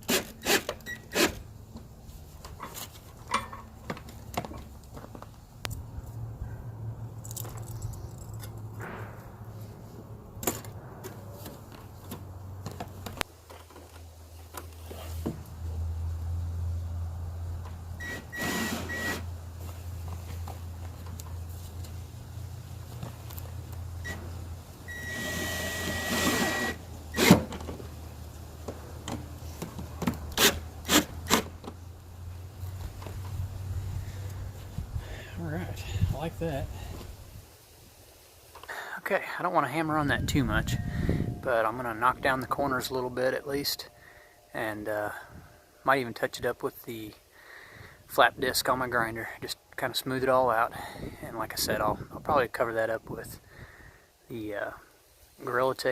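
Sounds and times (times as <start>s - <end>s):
power tool whirring whine: 18.0s - 19.3s, 24.9s - 27.6s.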